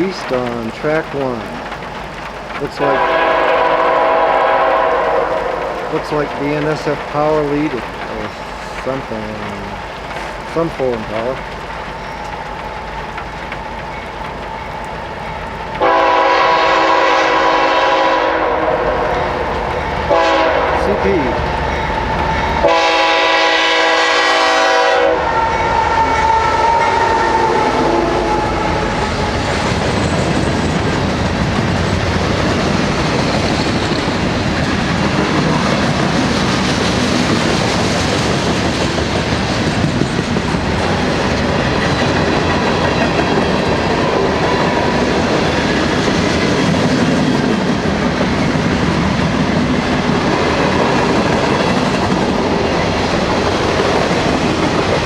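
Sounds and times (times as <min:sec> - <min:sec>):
train wheels clattering on rails: 0:00.0 - 0:55.0
train horn: 0:02.8 - 0:06.0, 0:15.8 - 0:19.4, 0:20.1 - 0:21.1, 0:22.6 - 0:29.3.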